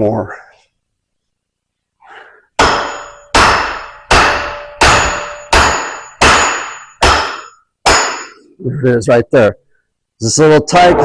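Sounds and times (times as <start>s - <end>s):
hammer blows on metal: 2.6s - 8.4s.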